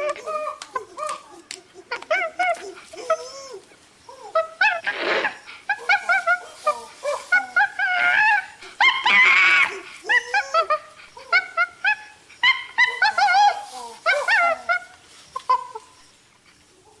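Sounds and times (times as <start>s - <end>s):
animal yipping and whining: 0.0s - 17.0s.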